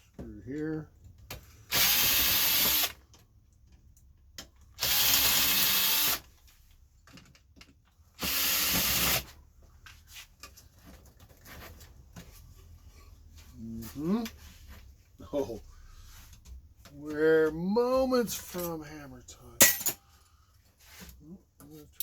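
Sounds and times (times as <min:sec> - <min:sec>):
cordless drill running: 0:01.7 - 0:03.0, 0:04.8 - 0:06.3, 0:08.2 - 0:09.3.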